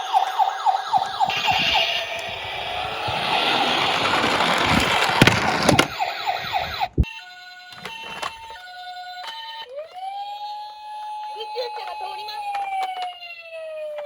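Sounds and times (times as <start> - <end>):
electronic toy siren wailing: 0.0 - 14.0
toy two-tone siren: 0.0 - 14.0
toy cars rattling down slope: 0.2 - 6.8.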